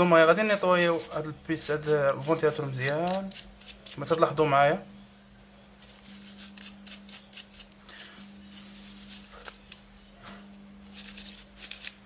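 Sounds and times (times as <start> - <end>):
steady low hum: 0.0 - 12.0
scratchy brushing strokes: 5.8 - 9.7.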